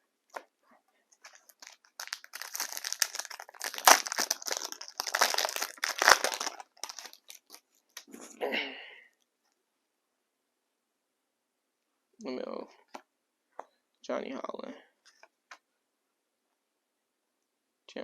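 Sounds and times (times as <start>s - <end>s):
card wrapper tearing and crinkling: 1.2s - 8.0s.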